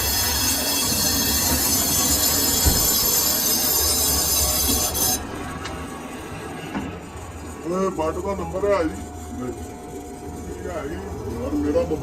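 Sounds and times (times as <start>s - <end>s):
lathe cutting tool squeal: 0.0s - 6.5s.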